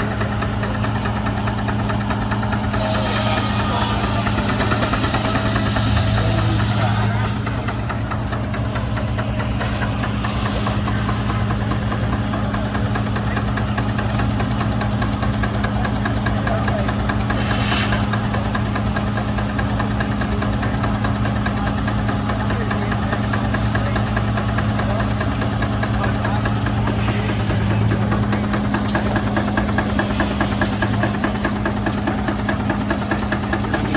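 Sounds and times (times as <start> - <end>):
engine running with ticking: 0.0 - 33.9.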